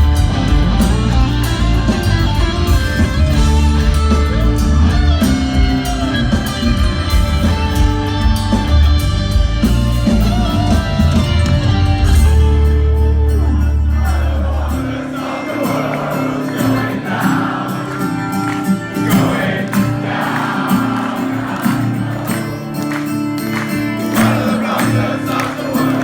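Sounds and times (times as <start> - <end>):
rock band playing live: 0.0 - 26.0
many voices singing together: 13.4 - 23.0, 23.9 - 26.0.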